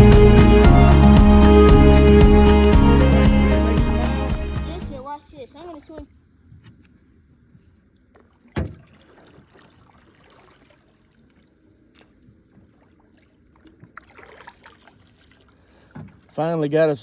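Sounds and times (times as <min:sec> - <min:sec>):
paddle strokes in water: 0:05.9 - 0:16.5.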